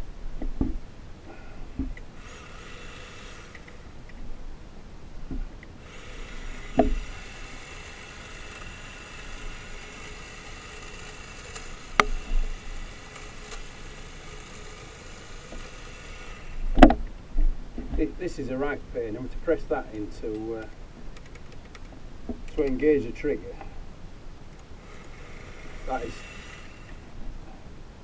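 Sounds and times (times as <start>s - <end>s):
plastic body knocks and clicks: 0.4s - 0.8s, 16.7s - 18.1s.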